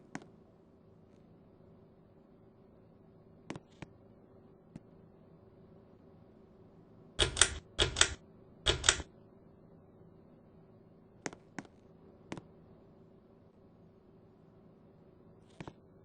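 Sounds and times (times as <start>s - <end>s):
faint hum: 0.0s - 16.0s
ceiling fan pull-chain clicks: 7.2s - 9.1s.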